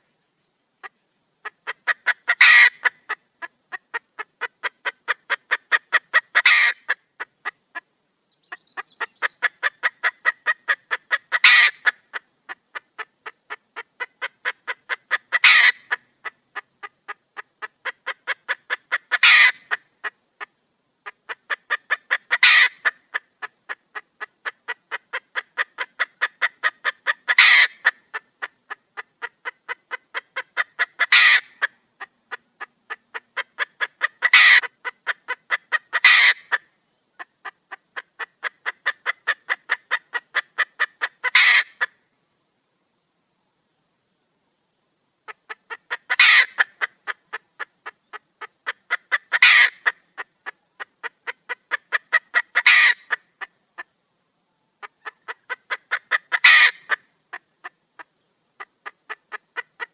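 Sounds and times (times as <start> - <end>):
hen clucking and squawking: 0.8 - 7.9, 8.5 - 42.0, 45.2 - 54.0, 54.7 - 59.9.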